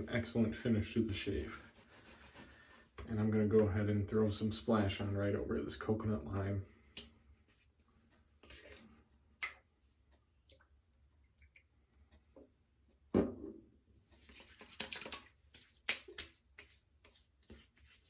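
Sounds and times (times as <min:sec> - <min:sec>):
wet palms patting face: 0:14.3 - 0:18.0.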